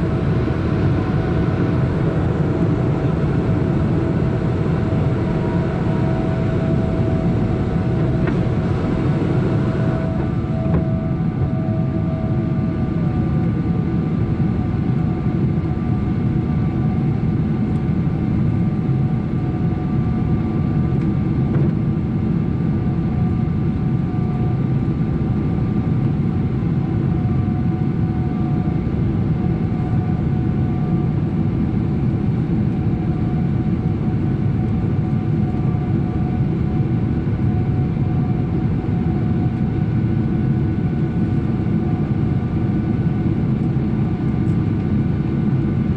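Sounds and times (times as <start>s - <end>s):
jet engine roar in cabin: 0.0s - 45.9s
engine whining tones: 2.8s - 12.7s.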